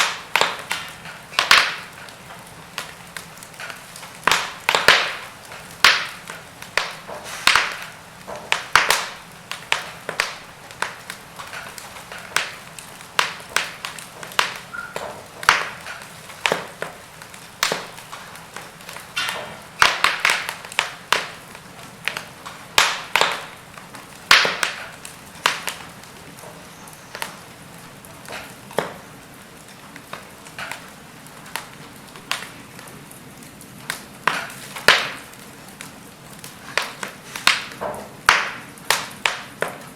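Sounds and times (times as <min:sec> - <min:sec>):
fireplace logs crackling: 0:00.0 - 0:39.9.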